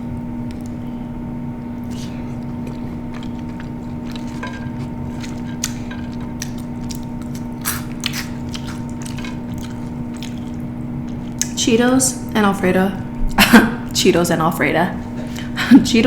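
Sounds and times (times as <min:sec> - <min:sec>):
steady low hum: 0:00.0 - 0:16.0
chewing and biting food: 0:01.6 - 0:11.6
mouth clicks and smacks: 0:06.4 - 0:09.0.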